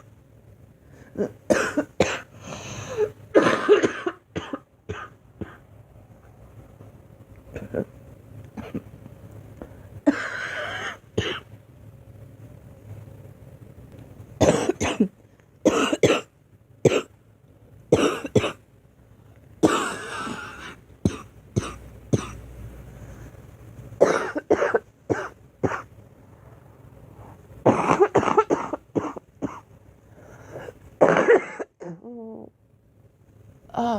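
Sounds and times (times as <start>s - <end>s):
girl coughing: 1.2s - 2.3s, 3.0s - 5.6s, 8.6s - 8.9s, 14.4s - 15.1s, 15.7s - 16.3s, 18.0s - 18.6s, 19.6s - 22.4s, 24.0s - 25.9s, 27.7s - 29.7s, 31.0s - 32.2s.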